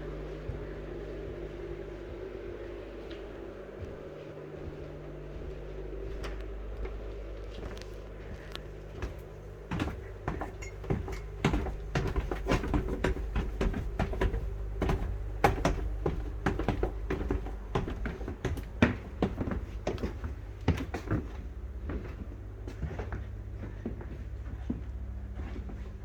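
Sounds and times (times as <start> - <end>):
low hum: 0.0 - 26.0
knocks and clatter: 9.1 - 21.3.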